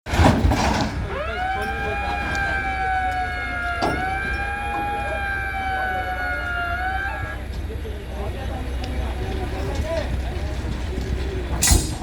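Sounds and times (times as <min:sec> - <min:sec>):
horn long blast: 0:01.1 - 0:07.5.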